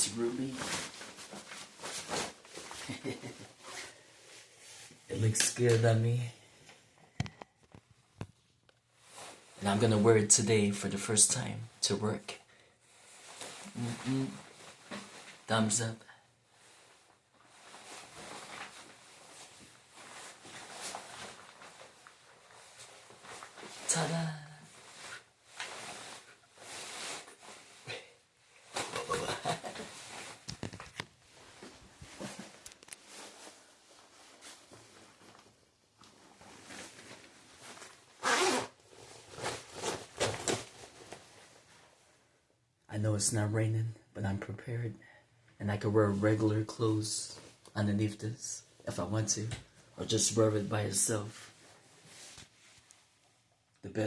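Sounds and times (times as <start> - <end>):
rain suit rustling: 0.0 - 6.6, 8.8 - 10.0, 12.6 - 15.8, 16.4 - 42.4, 49.6 - 53.7.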